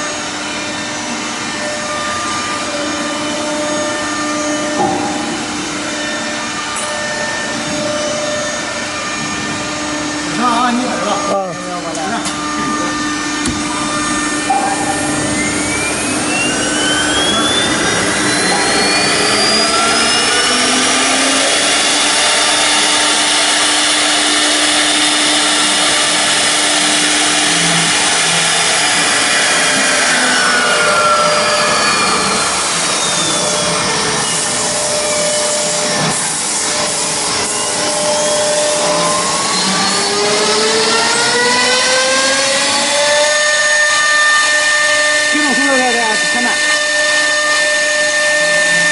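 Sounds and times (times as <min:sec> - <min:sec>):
router machining noise: 0:00.0 - 0:48.9
spindle motor whine: 0:00.0 - 0:48.9.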